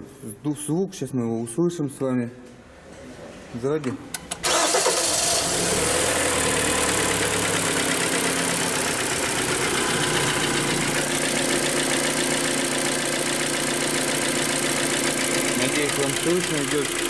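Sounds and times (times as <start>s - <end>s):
petrol engine idling: 4.2s - 17.0s
engine knock rattling: 6.2s - 17.0s.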